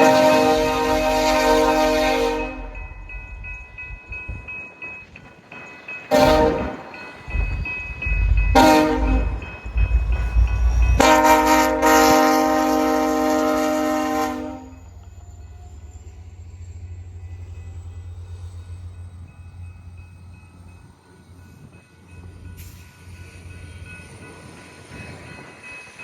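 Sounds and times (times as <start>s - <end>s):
locomotive air horn: 0.0s - 2.8s, 6.1s - 6.8s, 8.6s - 9.4s, 11.0s - 14.8s
train rumbling: 0.0s - 26.0s.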